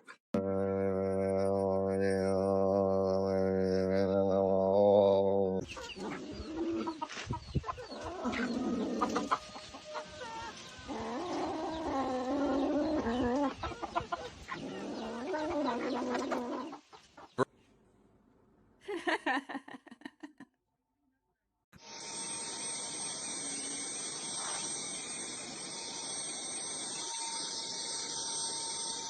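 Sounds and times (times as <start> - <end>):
wavering animal calls: 0.4 - 17.5.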